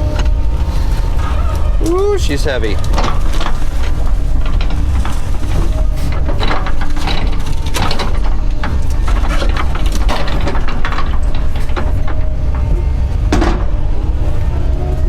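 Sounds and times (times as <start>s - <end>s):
wood cracking and snapping: 0.0s - 14.7s
excavator diesel engine under load: 0.0s - 15.0s.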